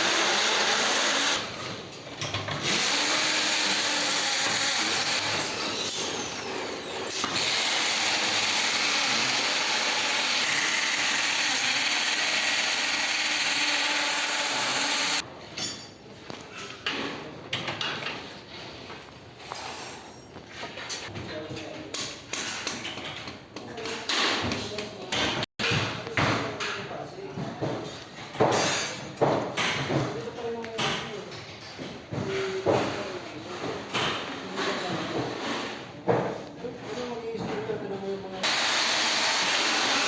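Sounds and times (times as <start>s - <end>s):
power tool running: 0.0s - 1.6s, 2.5s - 15.2s, 38.4s - 40.0s.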